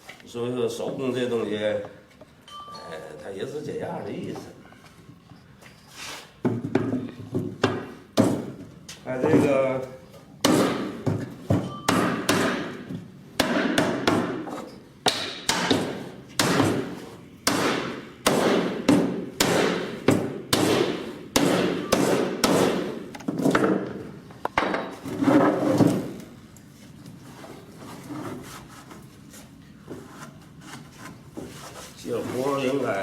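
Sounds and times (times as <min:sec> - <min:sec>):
hammer knocking wooden joints: 0:11.9 - 0:12.8, 0:17.4 - 0:23.8.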